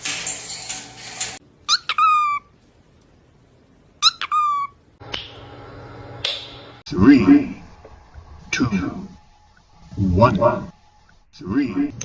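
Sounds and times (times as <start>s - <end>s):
noisy room sound: 0.0s - 12.0s
parrot calls: 1.6s - 2.5s, 4.0s - 4.8s.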